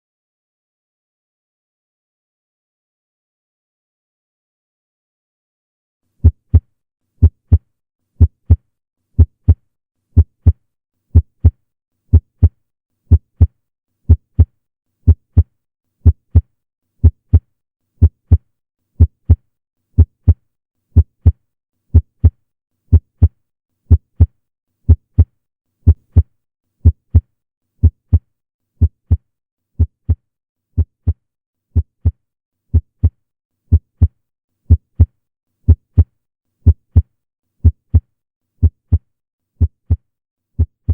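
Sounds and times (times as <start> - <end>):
heartbeat lub-dub: 7.2 - 7.6, 18.0 - 18.4, 27.8 - 28.2, 28.8 - 29.2, 29.8 - 30.2, 30.8 - 31.2, 31.8 - 33.1, 34.7 - 35.1, 36.7 - 37.0, 38.6 - 39.0, 39.6 - 40.0, 40.6 - 40.9.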